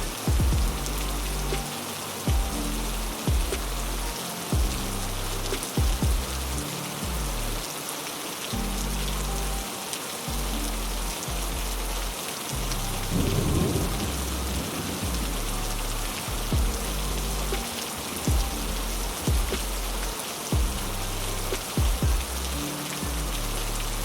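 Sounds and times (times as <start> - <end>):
low rumble of thunder: 0.0 - 1.6, 12.6 - 17.4
heavy rain falling: 0.0 - 24.0.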